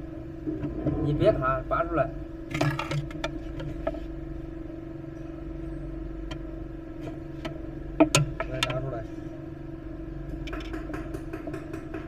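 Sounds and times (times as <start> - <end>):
steady mechanical hum: 0.0 - 12.0.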